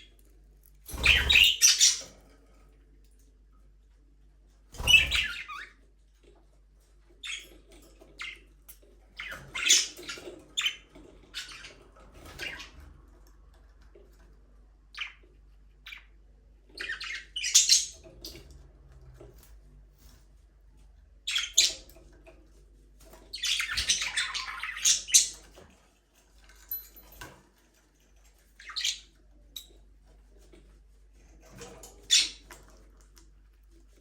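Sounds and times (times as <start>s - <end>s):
budgerigars chirping: 1.0s - 2.1s, 4.8s - 5.7s, 16.8s - 18.0s, 23.4s - 25.4s.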